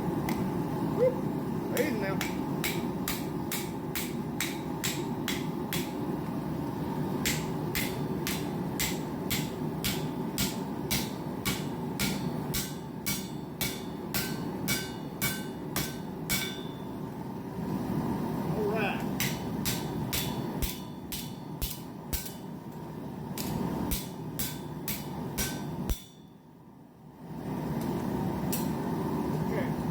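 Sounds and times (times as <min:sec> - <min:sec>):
hammer striking steel on anvil: 0:01.8 - 0:06.0, 0:07.2 - 0:17.0, 0:19.1 - 0:22.5, 0:23.4 - 0:26.4, 0:28.5 - 0:28.8.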